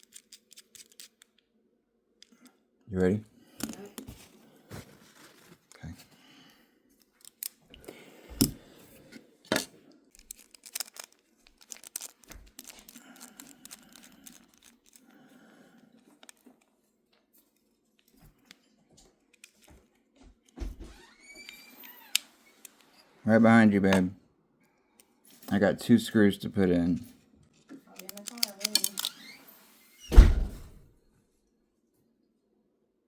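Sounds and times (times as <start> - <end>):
metal parts clicking and tapping: 0.0 - 1.3, 9.5 - 15.0, 28.0 - 29.1.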